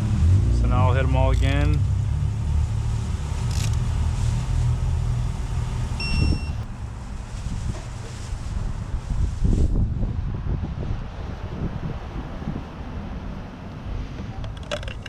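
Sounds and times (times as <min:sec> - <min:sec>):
low rumbling handling noise: 0:00.0 - 0:10.7, 0:13.8 - 0:15.0
short high electronic beep: 0:06.0 - 0:06.6.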